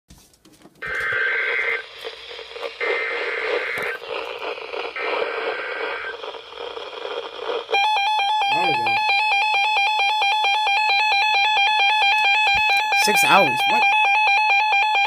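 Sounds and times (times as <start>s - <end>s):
radio static hiss: 0.8s - 9.1s, 12.1s - 14.0s
warbling two-tone digital data bursts: 0.9s - 9.1s, 12.8s - 14.0s.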